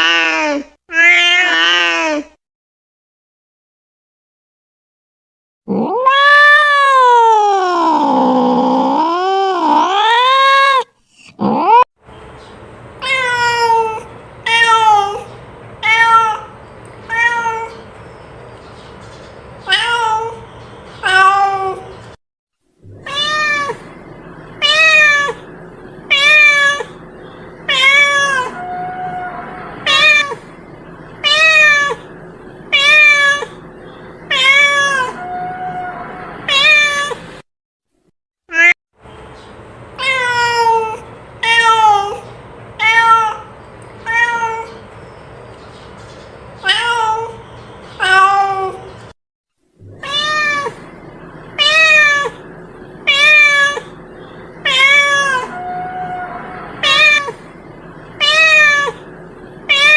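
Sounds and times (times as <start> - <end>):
cat meowing: 0.0 - 2.3, 5.7 - 11.8, 13.0 - 17.8, 19.6 - 20.4, 21.0 - 21.9, 22.9 - 23.9, 24.6 - 25.4, 26.1 - 27.0, 27.7 - 30.5, 31.2 - 32.1, 32.7 - 33.6, 34.3 - 37.2, 38.5 - 38.8, 40.0 - 44.8, 46.6 - 47.4, 48.0 - 48.9, 49.9 - 50.9, 51.6 - 54.0, 54.6 - 57.5, 58.2 - 59.9
faint steady hum: 49.8 - 59.9.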